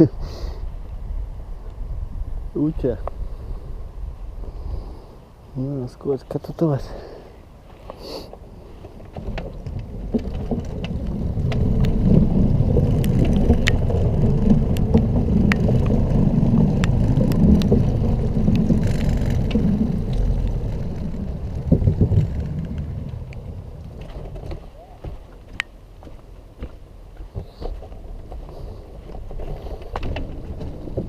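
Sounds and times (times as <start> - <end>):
wind buffeting microphone: 0.0 - 6.0, 8.4 - 31.0
sharp ticks and knocks: 9.1 - 31.0.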